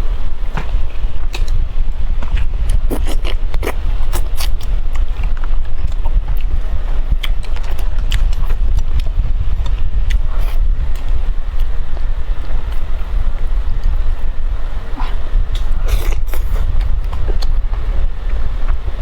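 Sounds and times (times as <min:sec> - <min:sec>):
steady low rumble: 0:00.0 - 0:19.0
wet chewing and lip smacks: 0:02.2 - 0:12.0.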